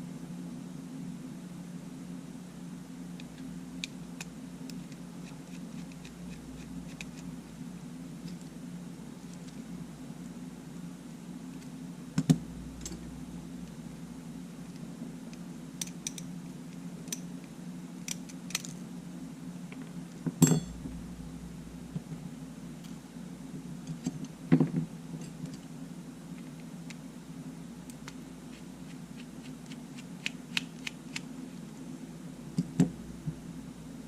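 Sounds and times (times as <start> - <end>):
steady low hum: 0.0 - 34.0
tools clinking on a bench: 20.4 - 20.8.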